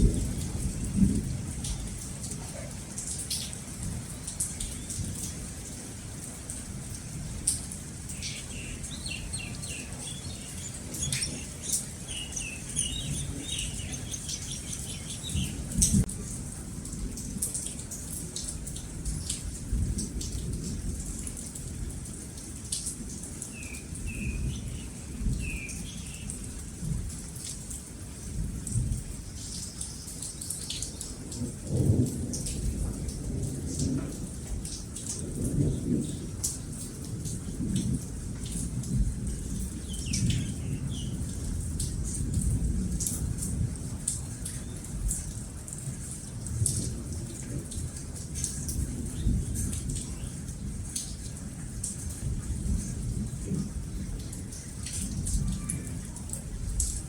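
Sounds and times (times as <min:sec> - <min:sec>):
thunder rumbling: 0:00.0 - 0:02.7, 0:07.1 - 0:17.3
steady rain: 0:00.0 - 0:57.0
birds chirping: 0:08.0 - 0:16.1, 0:23.5 - 0:26.6, 0:39.8 - 0:41.2.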